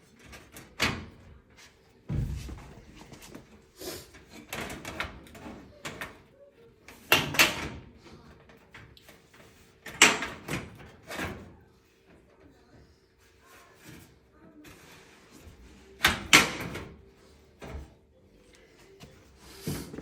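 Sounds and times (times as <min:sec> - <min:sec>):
sheet metal clanks and knocks: 0:02.1 - 0:03.0.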